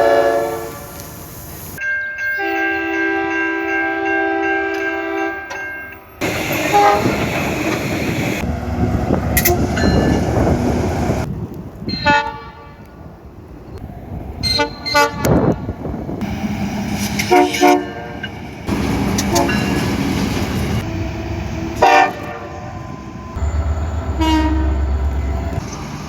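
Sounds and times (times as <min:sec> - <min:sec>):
train horn toots: 0:00.0 - 0:01.0, 0:02.4 - 0:05.7, 0:06.6 - 0:07.3, 0:09.4 - 0:10.0, 0:12.0 - 0:12.9, 0:14.5 - 0:15.6, 0:17.2 - 0:18.2, 0:19.2 - 0:19.9, 0:20.8 - 0:25.6
trains rumbling on rails: 0:00.0 - 0:26.0.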